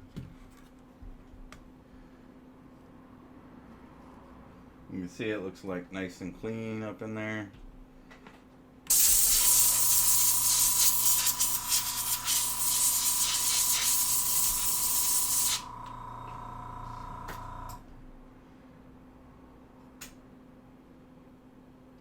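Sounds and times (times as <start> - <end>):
motor hum with high whine: 7.5 - 22.0
pressurised spray hissing: 8.9 - 15.7.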